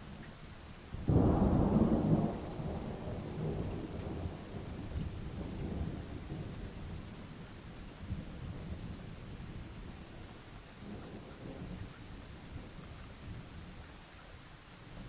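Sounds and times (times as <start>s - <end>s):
heavy rain hiss: 0.0s - 15.0s
thunder crack and rumble: 1.0s - 7.1s.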